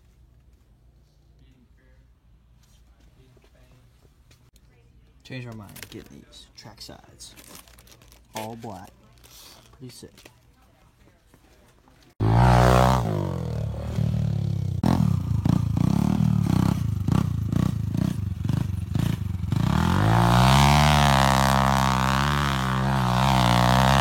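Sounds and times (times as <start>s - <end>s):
dirt bike engine revving: 12.2s - 24.0s.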